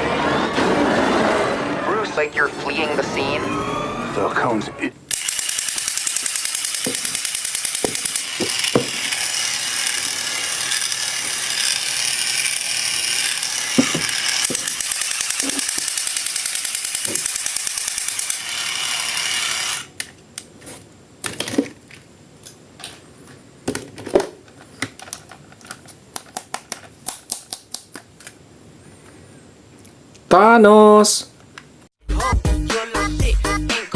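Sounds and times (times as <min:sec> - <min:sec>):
mechanical ratcheting clatter: 0:05.1 - 0:19.9.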